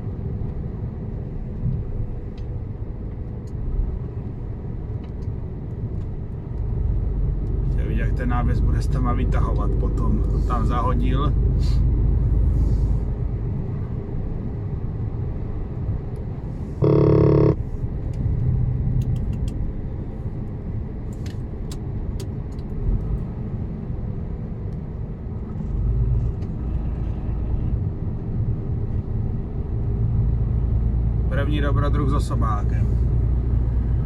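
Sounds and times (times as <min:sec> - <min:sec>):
truck horn blast: 0:16.8 - 0:17.6.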